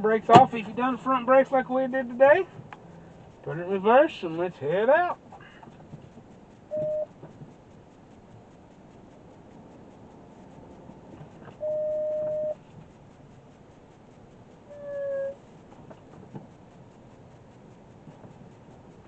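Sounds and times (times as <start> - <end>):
reverse warning chime beeping: 6.7 - 7.2, 11.6 - 12.6.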